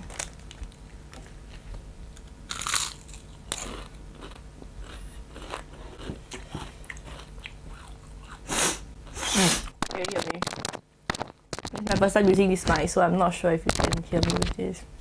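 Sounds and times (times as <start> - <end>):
crunchy chewing of fried chicken: 0.0 - 8.6
loud bite crunch: 2.5 - 11.8.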